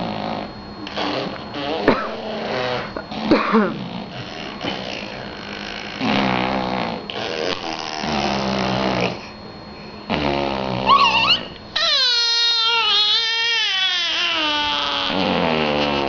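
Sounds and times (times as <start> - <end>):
person making squeaky vocal noises: 7.1 - 8.4, 10.8 - 16.0.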